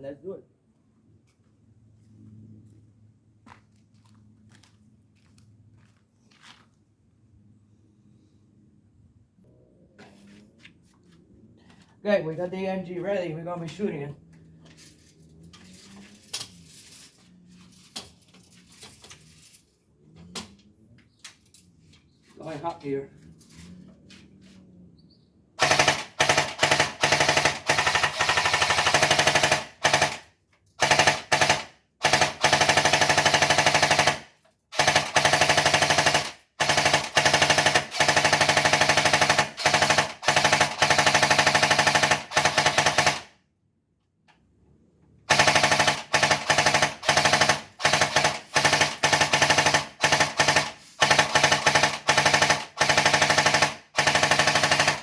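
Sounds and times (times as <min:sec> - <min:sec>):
airsoft gun firing bursts: 0:25.6 - 0:43.3, 0:45.3 - 0:55.0.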